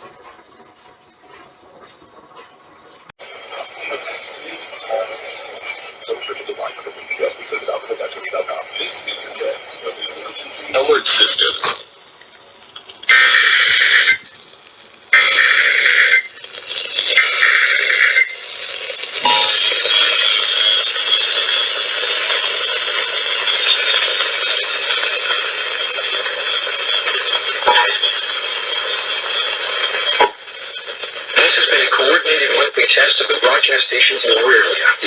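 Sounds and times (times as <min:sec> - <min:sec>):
screeching digital data bursts: 0:03.5 - 0:35.0
two-tone attention signal: 0:19.2 - 0:22.4.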